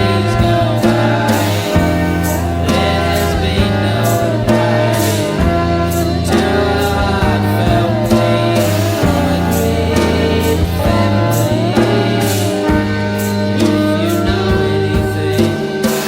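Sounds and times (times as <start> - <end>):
person singing: 0.0 - 16.0
rock band playing: 0.0 - 16.0.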